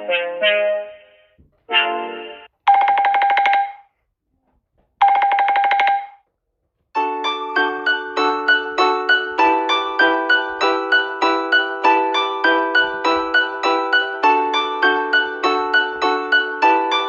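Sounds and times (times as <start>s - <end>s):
piano-like ringtone tune: 1.7s - 3.8s, 5.0s - 6.2s, 7.0s - 17.0s
trilling telephone ring: 2.7s - 3.9s, 5.0s - 6.2s.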